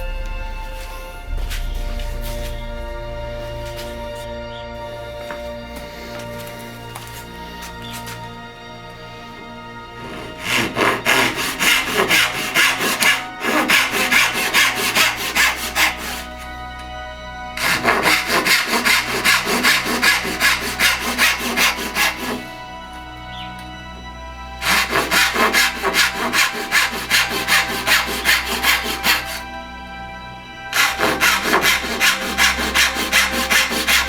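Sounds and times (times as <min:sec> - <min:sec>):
background music: 0:00.0 - 0:34.0
hand saw cutting wood: 0:10.0 - 0:16.4, 0:17.6 - 0:22.6, 0:24.6 - 0:29.5, 0:30.7 - 0:34.0.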